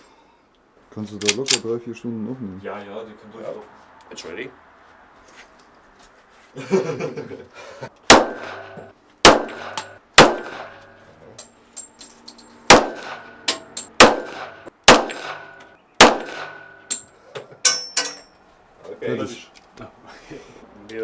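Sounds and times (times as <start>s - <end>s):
pistol shots: 8.1s - 10.8s, 12.7s - 16.8s
light metallic clinks: 11.3s - 12.7s, 13.5s - 14.0s, 16.8s - 18.4s.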